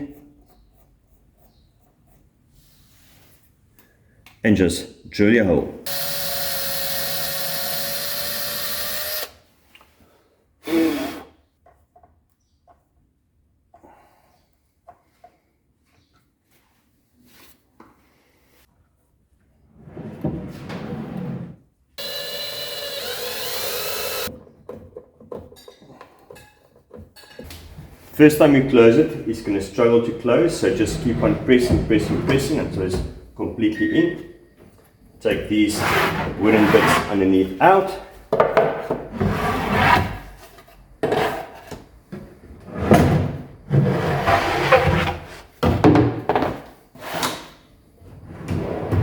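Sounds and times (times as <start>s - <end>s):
power drill whining: 5.9s - 9.4s, 22.0s - 24.3s
wood scraping against wood: 35.5s - 37.4s.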